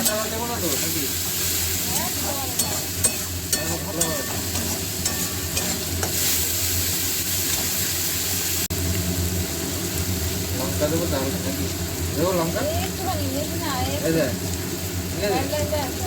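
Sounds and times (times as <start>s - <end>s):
prawns sizzling in hot oil: 0.0s - 16.0s
spatula knocking against pan: 2.6s - 6.1s.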